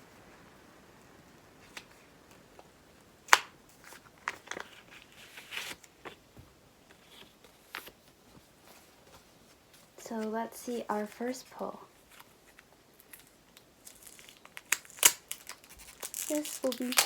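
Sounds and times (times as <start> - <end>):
plastic packets crinkling: 1.6 - 8.0, 9.8 - 17.0.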